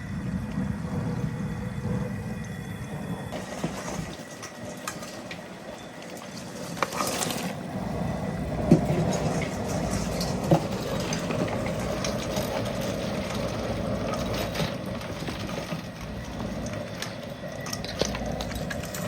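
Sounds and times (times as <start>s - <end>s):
gas burner rumble: 0.0s - 19.0s
water boiling: 0.0s - 19.0s
clicks and clatter: 8.6s - 19.0s.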